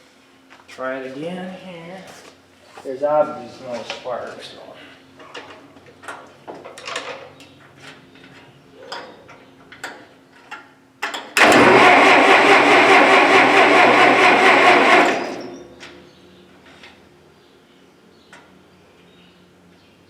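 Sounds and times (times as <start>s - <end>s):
engine cranking by starter: 11.4s - 16.0s.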